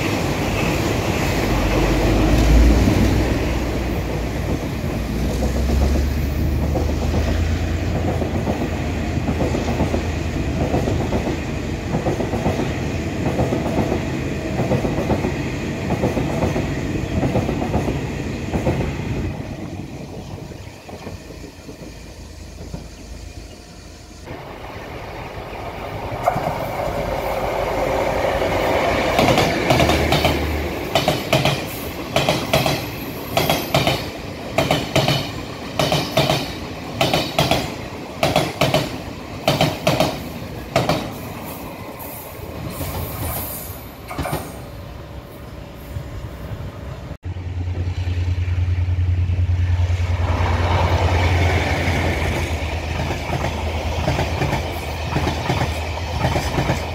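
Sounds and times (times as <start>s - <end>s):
train wheels clacking over rail joints: 29.0s - 41.4s, 50.4s - 56.9s.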